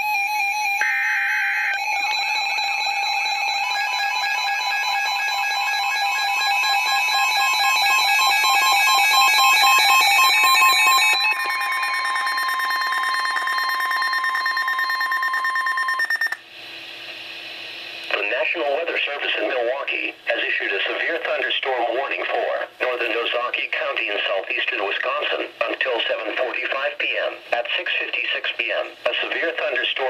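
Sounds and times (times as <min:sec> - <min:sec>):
warbling electronic alarm: 0:00.0 - 0:16.4.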